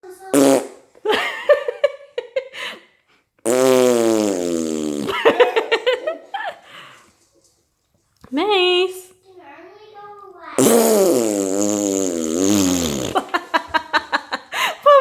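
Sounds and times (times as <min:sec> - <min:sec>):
drawn-out fart sound: 0:00.3 - 0:01.0, 0:03.4 - 0:05.7, 0:10.6 - 0:13.7
baby laughing: 0:05.1 - 0:06.6.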